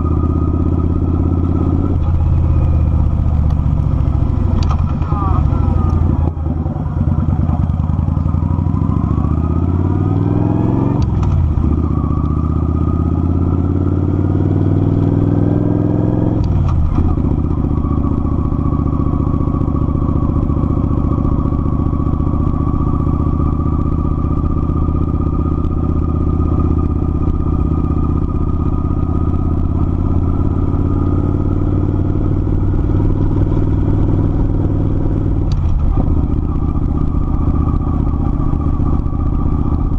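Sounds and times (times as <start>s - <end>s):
motorcycle engine shifting up: 0.0s - 39.9s.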